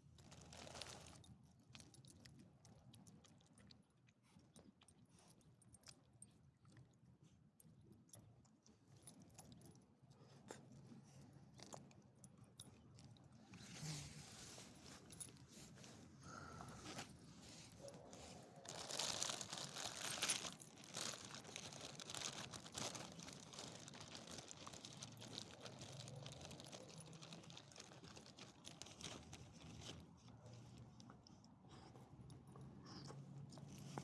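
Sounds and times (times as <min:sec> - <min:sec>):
crinkling and crunching with clicks: 0:00.0 - 0:09.8, 0:16.7 - 0:31.5.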